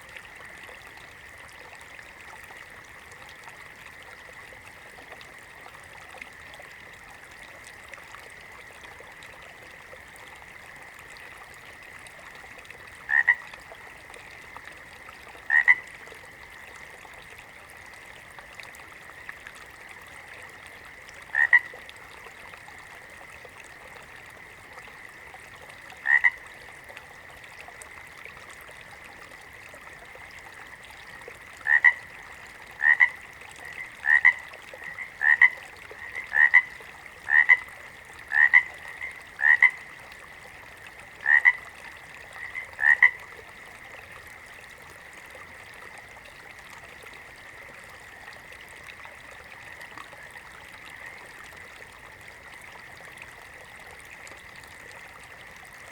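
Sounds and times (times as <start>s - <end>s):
faint frog chorus: 0.0s - 55.9s
frog croaking: 13.0s - 13.5s, 14.3s - 16.4s, 20.8s - 22.3s, 26.0s - 26.6s, 30.2s - 44.5s, 49.5s - 51.6s.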